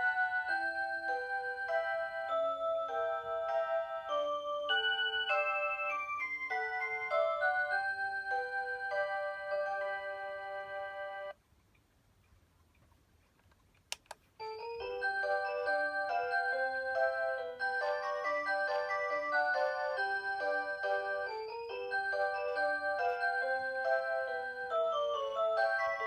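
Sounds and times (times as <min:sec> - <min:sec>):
alarm clock chime melody: 0:00.0 - 0:11.4, 0:14.4 - 0:26.0
sharp clicks: 0:11.6 - 0:14.2.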